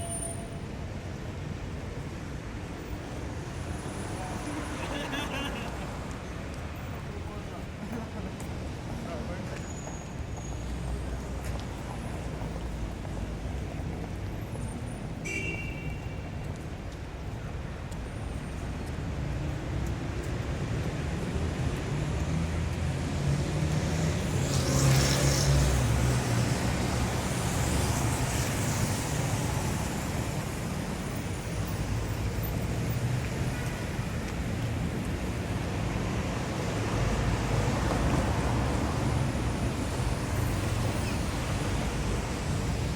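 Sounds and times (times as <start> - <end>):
short high squeak: 0.0 - 0.6
traffic engines rumbling: 0.0 - 42.9.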